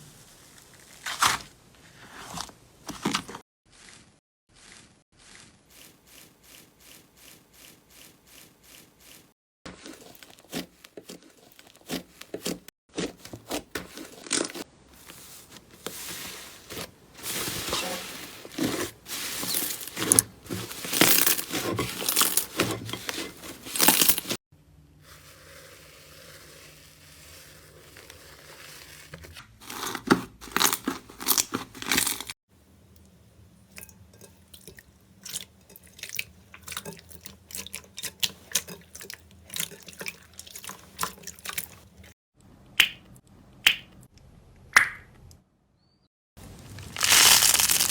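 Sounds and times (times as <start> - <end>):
slime crackling: 46.6 - 47.9.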